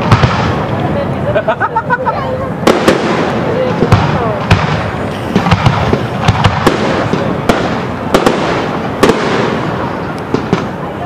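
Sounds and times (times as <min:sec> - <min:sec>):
noisy fireworks rumble: 0:00.0 - 0:11.0.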